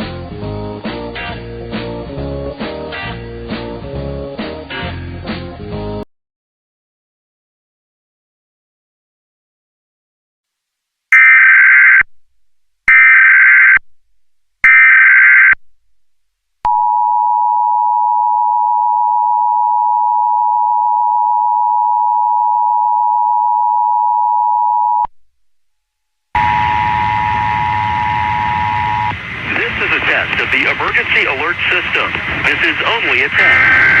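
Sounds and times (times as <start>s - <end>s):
two-tone attention signal: 26.4s - 29.1s.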